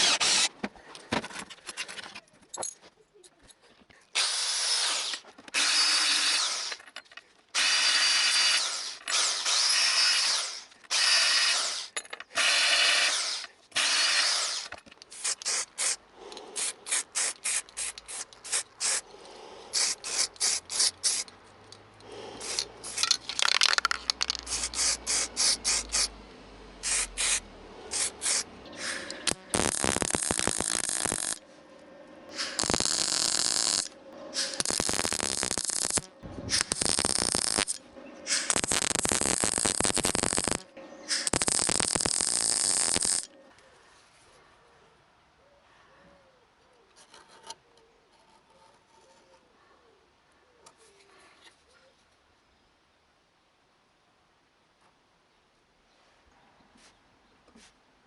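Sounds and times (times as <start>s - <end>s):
electric drill running: 0.0s - 0.5s, 4.2s - 6.8s.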